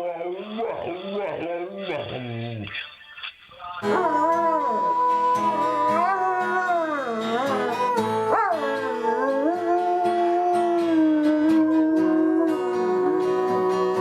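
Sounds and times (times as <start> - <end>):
dog howling: 0.0 - 2.6, 3.8 - 14.0
music: 3.8 - 14.0.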